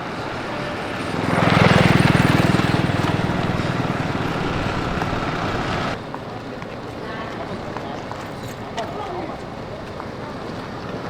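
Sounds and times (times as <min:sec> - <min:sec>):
small engine running: 0:00.0 - 0:06.0.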